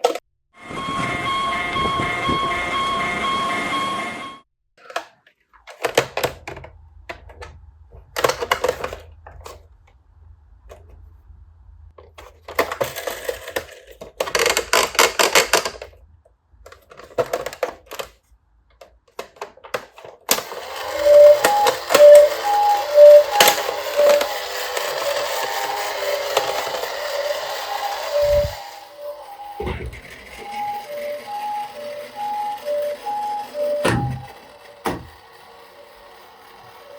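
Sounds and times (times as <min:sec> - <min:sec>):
electronic beeping tune: 0:00.6 - 0:04.4, 0:20.6 - 0:35.1
toy cars clattering down a slope: 0:08.1 - 0:09.6, 0:12.0 - 0:16.0, 0:16.7 - 0:36.9.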